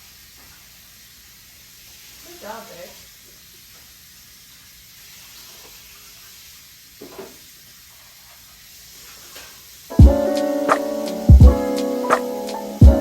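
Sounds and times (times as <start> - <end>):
faint steady hiss: 0.0 - 13.0.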